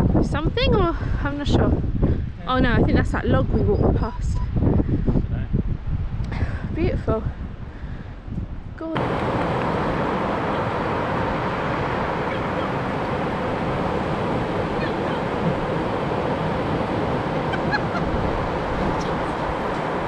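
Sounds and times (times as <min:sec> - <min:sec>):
ocean surf washing on shore: 0:08.9 - 0:20.0.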